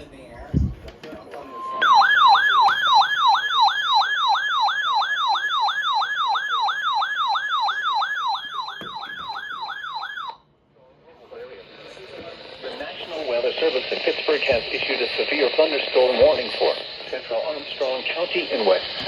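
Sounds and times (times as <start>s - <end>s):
electronic siren alarm: 1.4s - 10.4s.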